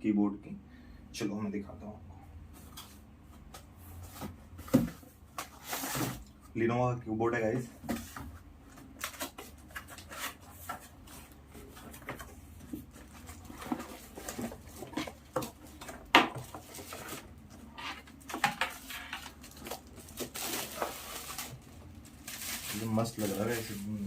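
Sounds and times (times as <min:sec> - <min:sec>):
packaging rustling and scraping: 0:03.9 - 0:06.3, 0:07.8 - 0:24.0.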